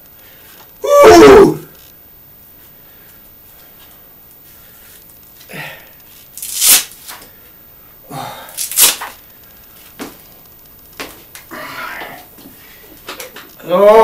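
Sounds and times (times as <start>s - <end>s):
person grunting: 8.1s - 8.6s.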